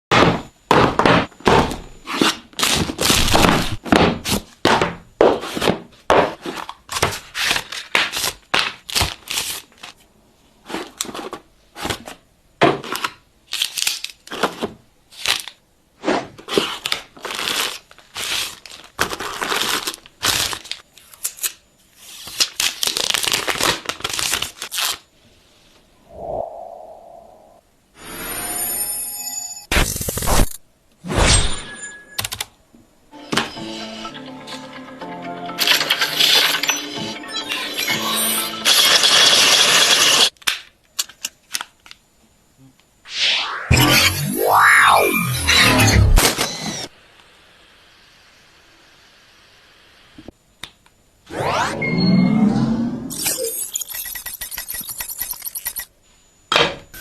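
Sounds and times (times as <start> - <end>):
plastic wrap crinkling: 16.6 - 25.0
brief hum: 43.1 - 46.8.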